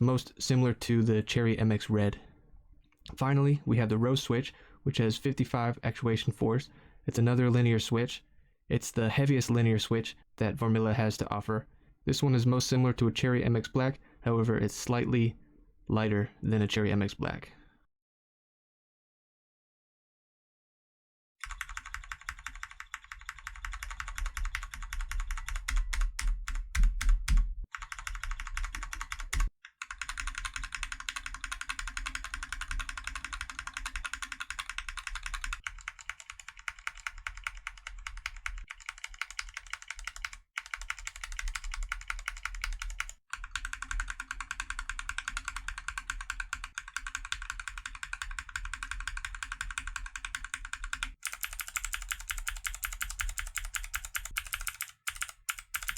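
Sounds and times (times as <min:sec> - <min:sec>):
fast typing on mechanical keyboard: 0:21.4 - 0:55.9.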